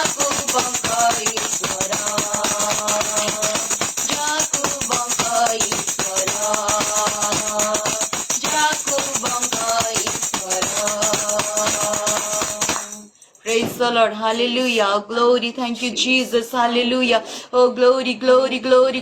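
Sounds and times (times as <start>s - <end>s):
tambourine beat: 0.0s - 13.8s
woman singing: 0.0s - 19.0s.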